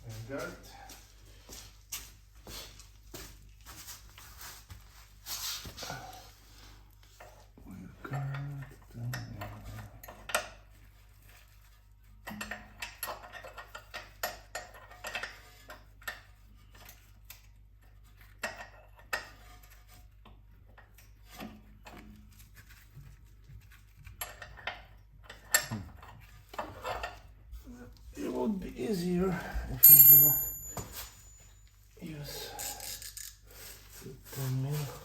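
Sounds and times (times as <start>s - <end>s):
metal hand tools clinking: 29.8s - 31.4s.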